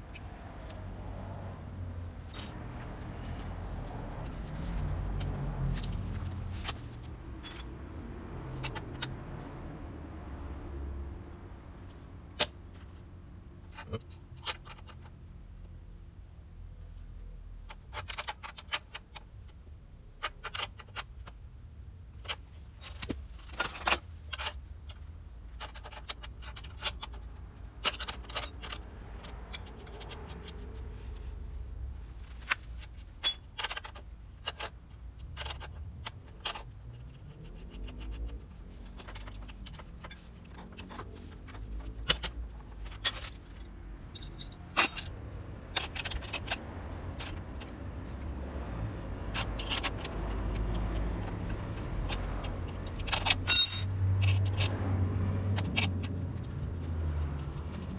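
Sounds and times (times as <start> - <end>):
metal tools clinking: 2.2 - 7.8, 22.8 - 24.0, 40.0 - 46.6, 51.8 - 54.7.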